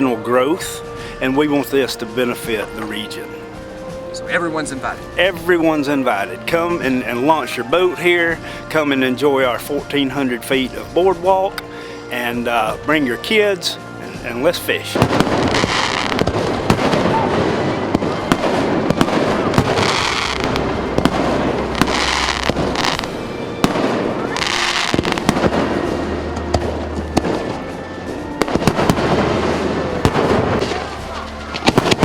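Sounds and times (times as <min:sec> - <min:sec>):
background music: 0:00.0 - 0:32.0
hissing crackle of fireworks: 0:14.0 - 0:32.0
firework bangs and cracks: 0:14.9 - 0:32.0.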